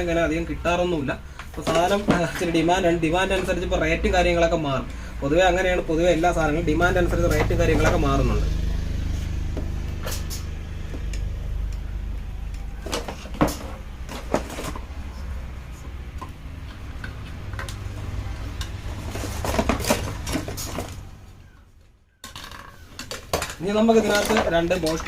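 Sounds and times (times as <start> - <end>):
small hard parts clicking and clinking: 22.2 - 25.0.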